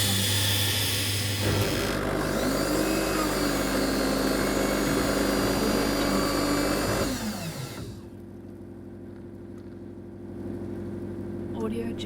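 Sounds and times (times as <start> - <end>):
espresso machine motor whirring: 0.0 - 8.1.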